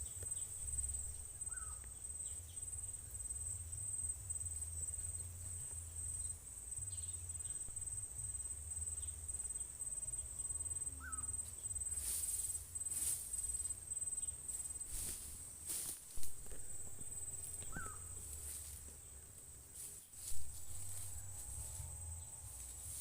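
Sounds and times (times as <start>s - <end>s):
cricket trilling: 0.0s - 23.0s
rustling: 11.4s - 23.0s.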